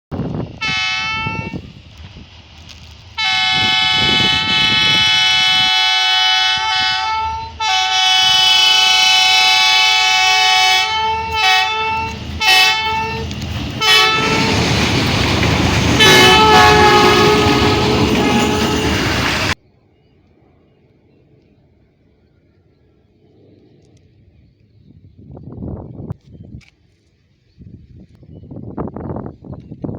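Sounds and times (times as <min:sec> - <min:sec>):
moving train rushing: 0:00.2 - 0:19.6
train horn blasts: 0:00.6 - 0:01.6, 0:03.2 - 0:14.8, 0:15.9 - 0:19.6.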